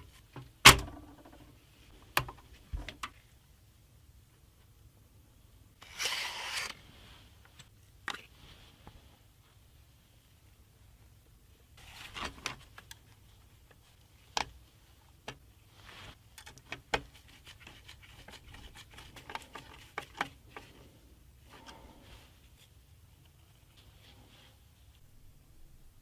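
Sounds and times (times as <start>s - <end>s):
small clicks and taps of parts: 16.3s - 17.1s
low steady hum: 18.3s - 26.0s.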